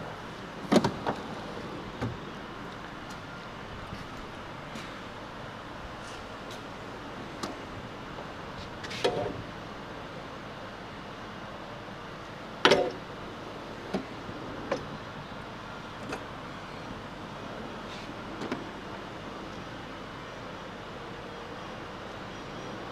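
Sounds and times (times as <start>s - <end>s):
steady background hiss: 0.0s - 22.9s
metal drawers clunking shut: 0.6s - 2.3s, 8.8s - 9.4s.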